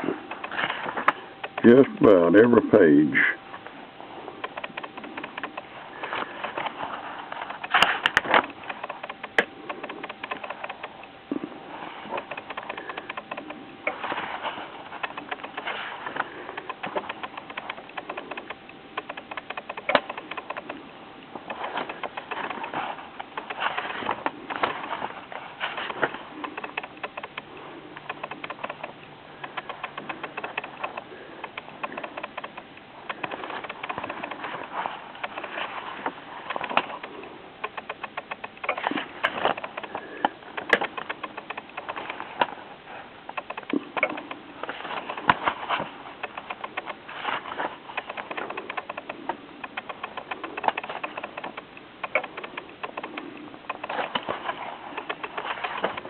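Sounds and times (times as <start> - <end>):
book pages rustling: 0.0 - 2.5, 3.6 - 56.0.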